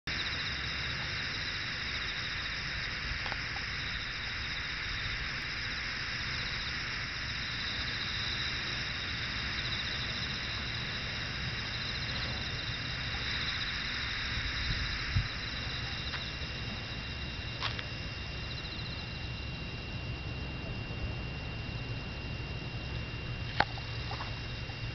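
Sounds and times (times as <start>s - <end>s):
insects chirring: 0.1s - 24.9s.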